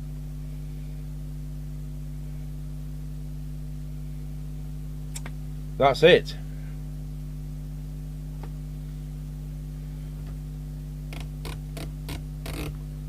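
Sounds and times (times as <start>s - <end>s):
steady low hum: 0.0s - 13.0s
rotary switch clicking: 11.1s - 12.8s.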